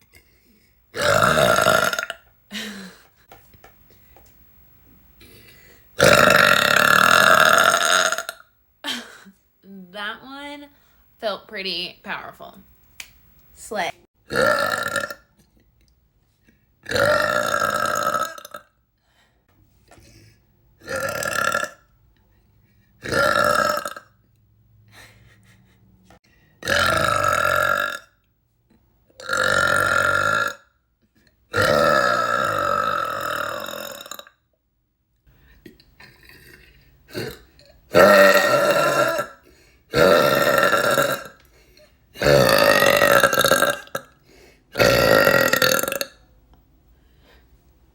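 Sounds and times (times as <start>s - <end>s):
woman burping loudly: 0.9s - 3.2s, 5.2s - 9.4s, 14.3s - 15.3s, 16.8s - 18.7s, 20.8s - 21.9s, 23.0s - 24.2s, 26.6s - 28.2s, 29.1s - 30.7s, 31.5s - 34.4s, 36.0s - 46.3s.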